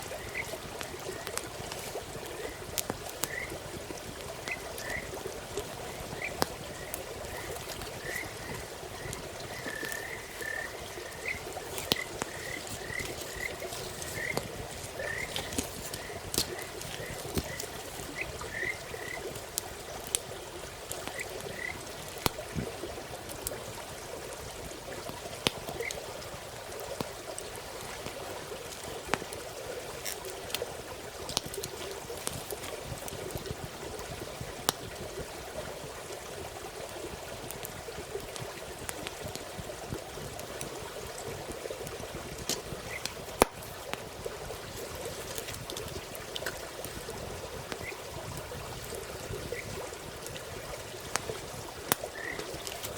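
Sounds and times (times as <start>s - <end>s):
frogs chorus: 0.0s - 19.6s, 21.0s - 22.0s, 50.6s - 52.9s
campfire crackling: 0.0s - 52.9s
single high frog calls: 6.2s - 11.4s.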